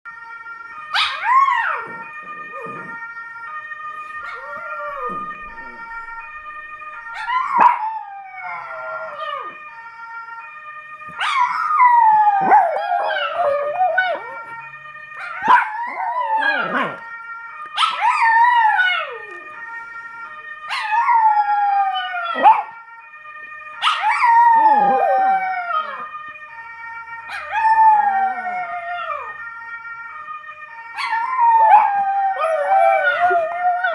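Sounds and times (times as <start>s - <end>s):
fire siren: 0.0s - 33.9s
dogs howling: 0.9s - 3.0s, 4.0s - 5.9s, 7.2s - 9.6s, 11.1s - 19.6s, 20.6s - 22.8s, 23.8s - 26.2s, 27.3s - 29.4s, 30.9s - 33.9s.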